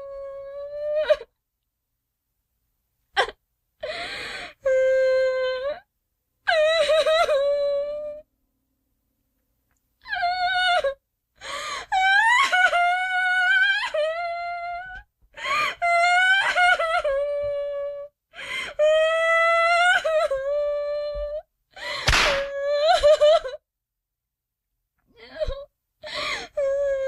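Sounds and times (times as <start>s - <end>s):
girl crying: 21.9s - 23.6s.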